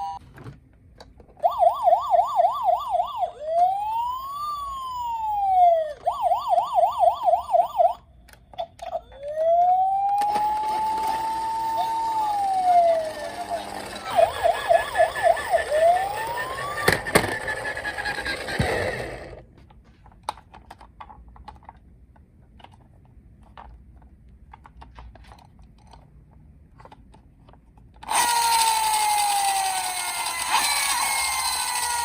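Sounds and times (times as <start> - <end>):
toy electronic siren: 0.0 - 0.2, 1.4 - 8.1, 8.8 - 19.4, 28.1 - 32.0
toy siren falling wail: 0.0 - 0.2, 1.4 - 8.1, 8.8 - 19.4, 28.1 - 32.0.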